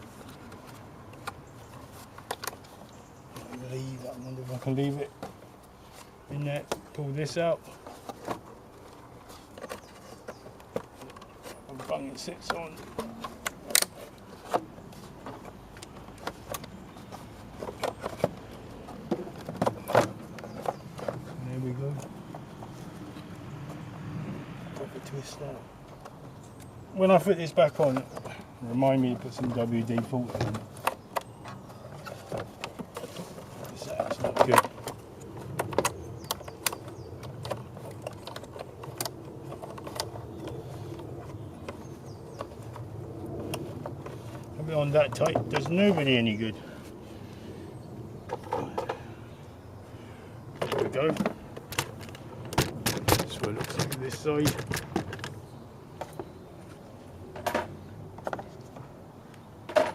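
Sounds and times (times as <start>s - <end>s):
clicks and knocks of plastic parts: 0.2s - 23.8s, 27.4s - 46.6s, 48.2s - 49.1s, 50.4s - 59.9s
plastic housing clicks and knocks: 50.6s - 55.4s.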